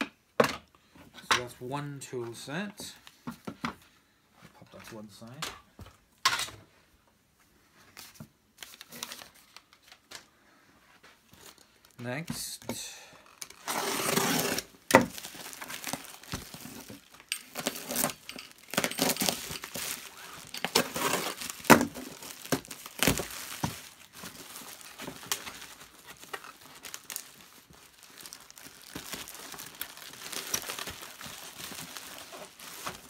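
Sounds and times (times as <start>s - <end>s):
packaging crinkling and rustling: 8.0s - 10.3s, 13.2s - 33.0s.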